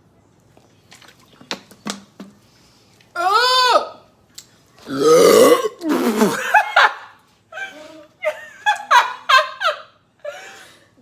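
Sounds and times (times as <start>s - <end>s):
person burping loudly: 4.9s - 6.4s.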